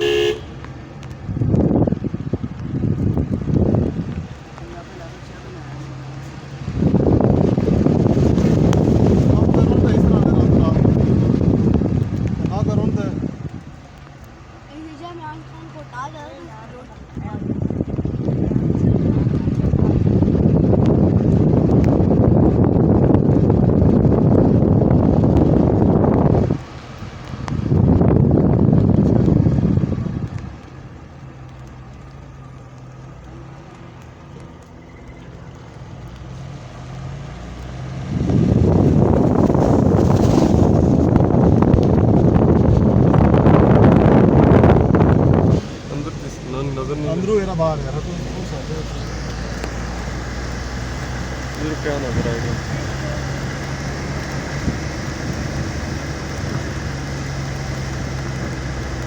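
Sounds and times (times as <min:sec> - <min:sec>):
wind buffeting microphone: 0:00.0 - 0:33.2, 0:35.3 - 0:59.0
road or rain hiss: 0:00.0 - 0:59.0
vehicle engine drone: 0:00.0 - 0:59.0.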